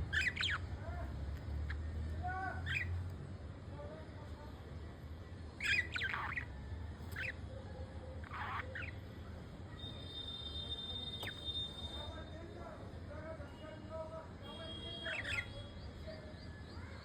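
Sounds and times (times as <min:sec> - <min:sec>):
budgerigars chirping and squawking: 0:00.0 - 0:00.7, 0:02.7 - 0:03.0, 0:05.6 - 0:07.4, 0:08.2 - 0:09.0, 0:15.0 - 0:15.7.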